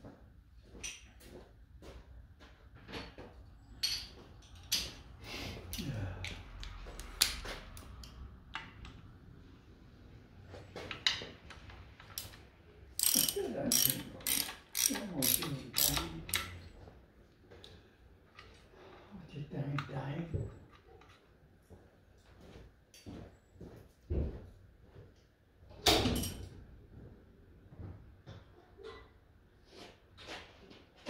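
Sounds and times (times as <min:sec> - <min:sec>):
ratchet spanner clicking: 0:13.0 - 0:16.6.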